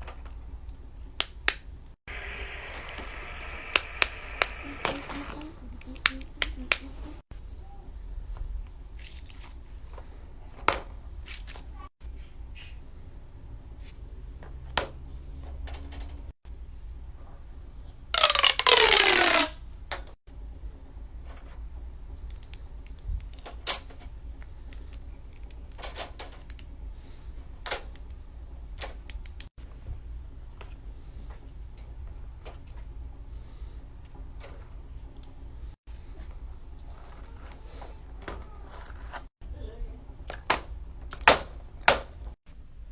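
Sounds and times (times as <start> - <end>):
low steady hum: 2.1 - 9.0.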